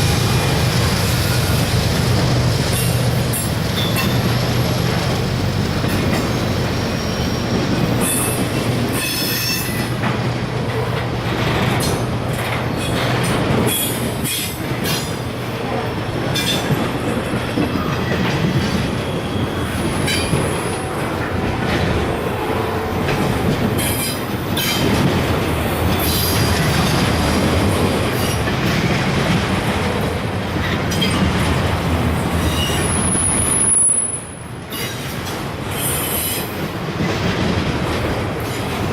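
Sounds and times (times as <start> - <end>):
wheels squealing on rail: 0.0 - 10.1, 10.8 - 29.0, 32.2 - 37.4
train wheels clacking: 0.0 - 34.0.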